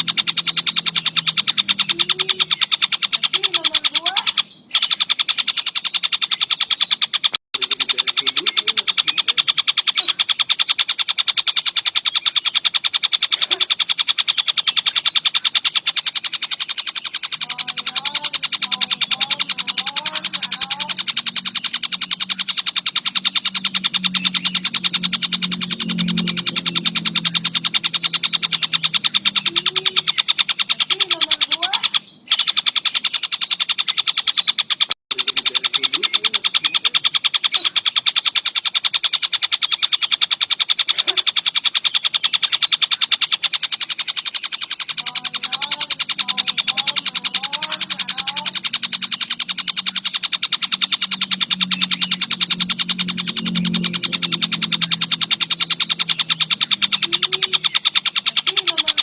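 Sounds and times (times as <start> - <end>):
low hum: 0.0 - 6.4, 7.6 - 34.1, 35.2 - 59.0
faint bird calls: 0.0 - 59.0
kingfisher chattering: 0.0 - 59.0.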